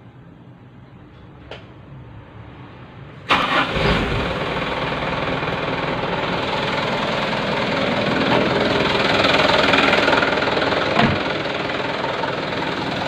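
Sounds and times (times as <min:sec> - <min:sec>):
truck engine idling: 0:03.3 - 0:13.0
short thump: 0:11.0 - 0:11.2.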